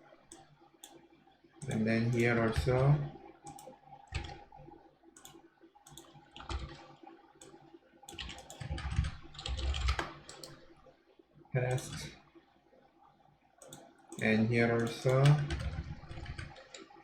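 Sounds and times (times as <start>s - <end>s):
computer keyboard typing: 1.6s - 4.4s, 5.2s - 10.6s, 11.7s - 12.1s, 13.6s - 17.0s.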